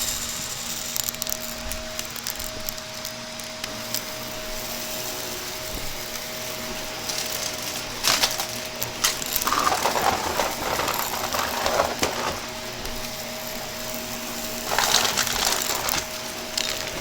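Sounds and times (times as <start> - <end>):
vacuum cleaner motor hum: 0.0 - 17.0
debris rattling through vacuum: 3.8 - 17.0.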